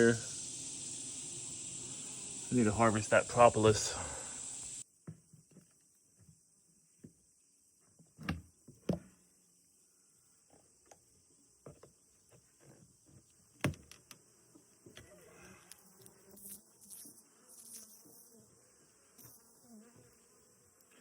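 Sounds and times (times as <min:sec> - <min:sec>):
bees buzzing faintly: 0:00.0 - 0:04.8, 0:14.1 - 0:21.0.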